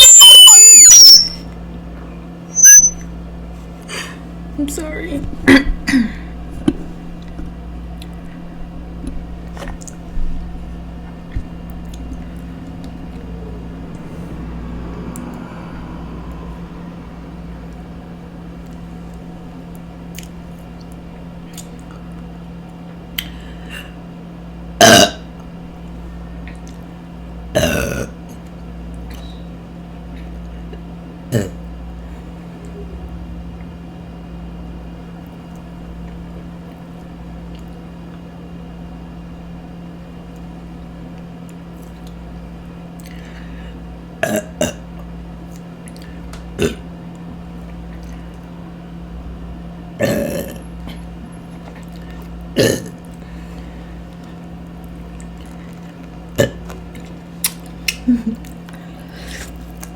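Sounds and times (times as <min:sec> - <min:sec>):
steady low hum: 0:00.0 - 0:59.9
woman burping: 0:05.4 - 0:06.3, 0:24.8 - 0:25.3, 0:27.6 - 0:28.2, 0:44.2 - 0:44.8, 0:50.0 - 0:51.0, 0:52.6 - 0:53.0.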